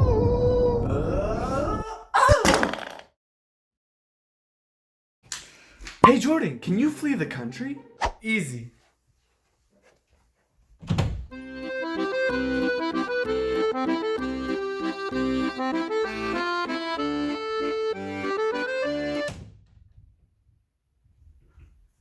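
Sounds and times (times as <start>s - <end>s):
accordion melody: 11.3s - 19.3s.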